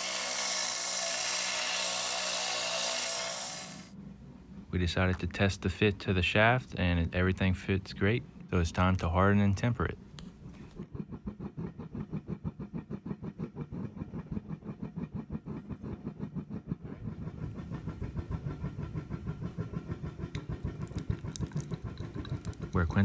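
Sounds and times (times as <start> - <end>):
forge rhythmic pulsing: 10.8 - 23.0.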